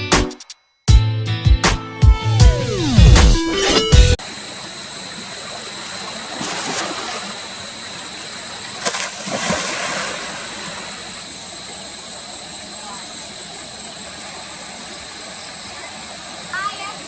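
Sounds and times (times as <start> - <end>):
background music: 0.0 - 4.2
water splashing: 4.4 - 17.0.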